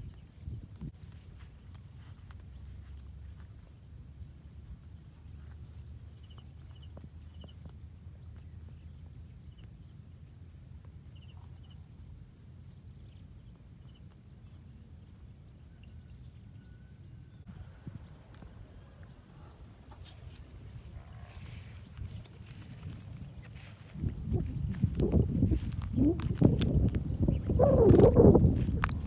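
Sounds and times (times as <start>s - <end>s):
low wind rumble: 17.3s - 29.0s.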